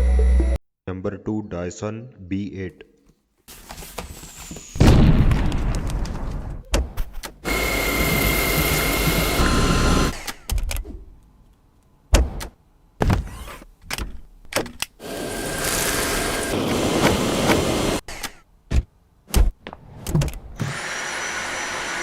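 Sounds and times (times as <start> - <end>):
vacuum cleaner motor whining: 7.5 - 10.1, 15.0 - 18.0, 20.6 - 22.0.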